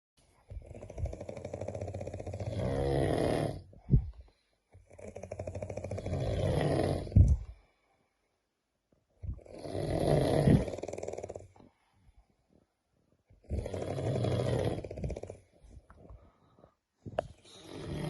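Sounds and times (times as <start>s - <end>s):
person snoring loudly: 0.6s - 3.7s, 4.9s - 7.4s, 9.3s - 11.6s, 13.4s - 15.5s, 17.5s - 18.0s.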